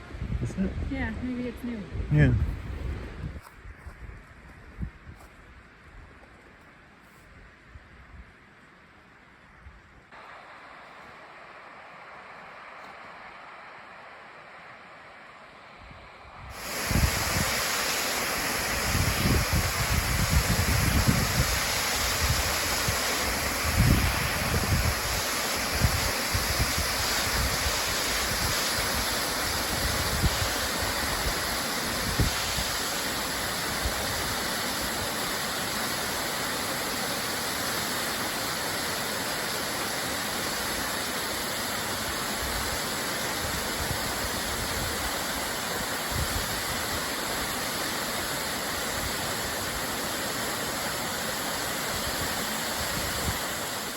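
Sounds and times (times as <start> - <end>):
wind bumps on microphone: 0.0 - 5.4, 15.8 - 17.8, 18.6 - 32.8, 46.1 - 46.8
waterfall rushing: 10.2 - 53.9.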